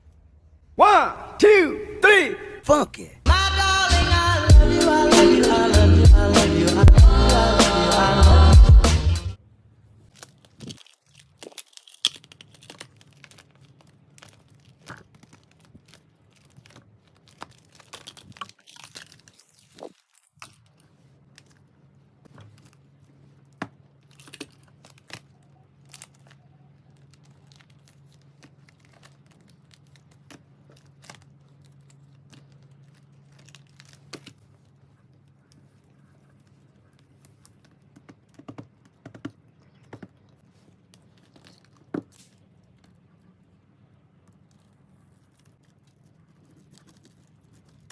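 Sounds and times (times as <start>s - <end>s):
low steady hum: 0.0s - 10.0s
packaging tearing and crinkling: 10.0s - 38.5s, 40.5s - 42.9s, 44.2s - 47.9s
clicks and taps: 38.0s - 40.1s.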